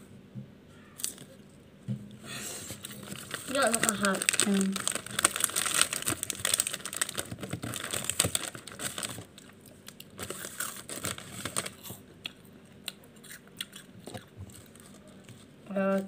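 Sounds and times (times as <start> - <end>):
snack wrapper crinkling: 2.8 - 15.5.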